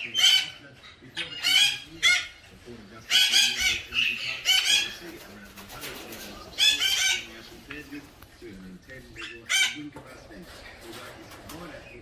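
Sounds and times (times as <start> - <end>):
cockatoo screeching: 3.1 - 5.0, 6.5 - 7.4.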